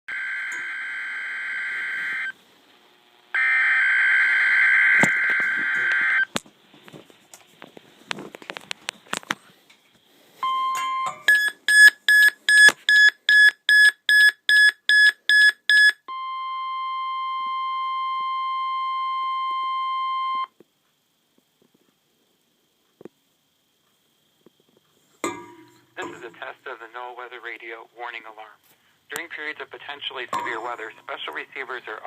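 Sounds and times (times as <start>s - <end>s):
warning alarm tone: 0.1s - 2.4s, 3.4s - 6.3s
radio crackle and clicks: 1.7s - 3.3s, 4.9s - 9.5s, 24.7s - 32.0s.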